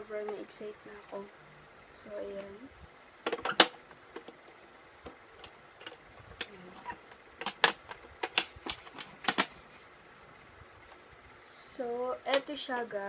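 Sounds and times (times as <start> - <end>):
makeup case clicks and taps: 7.4 - 9.5.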